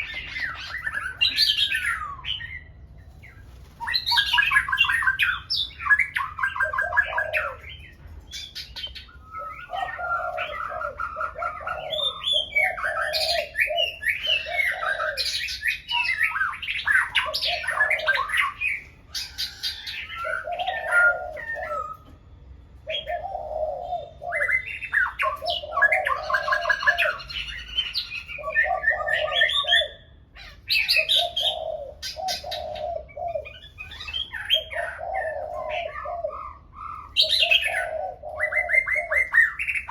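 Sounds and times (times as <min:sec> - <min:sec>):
birds singing: 0:00.0 - 0:39.9.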